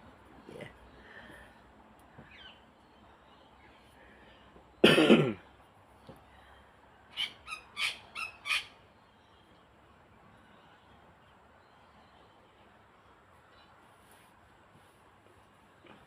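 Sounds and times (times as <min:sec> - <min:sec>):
bird calls: 0:00.4 - 0:04.5, 0:06.0 - 0:09.6.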